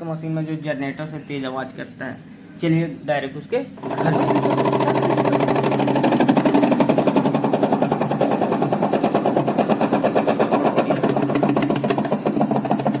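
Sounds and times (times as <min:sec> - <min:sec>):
washing machine spin clattering: 0:03.8 - 0:13.0.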